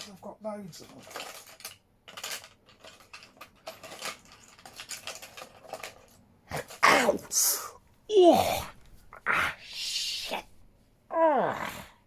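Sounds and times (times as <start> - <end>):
small plastic and metal pieces clattering: 0.0 - 7.4.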